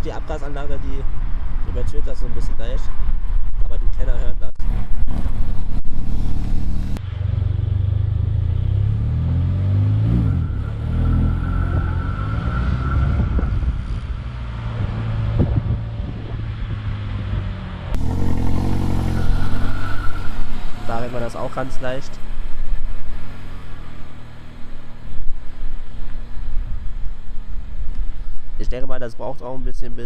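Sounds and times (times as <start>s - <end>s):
car engine revving: 4.4s - 7.0s, 17.8s - 28.2s.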